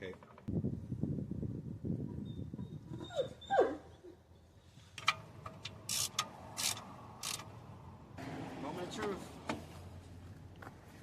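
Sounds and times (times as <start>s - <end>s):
dog whimpering: 2.6s - 4.2s.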